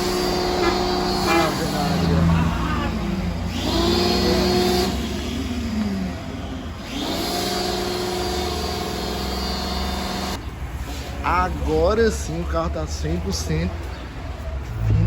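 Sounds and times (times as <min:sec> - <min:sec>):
motor revving: 0:00.0 - 0:10.4.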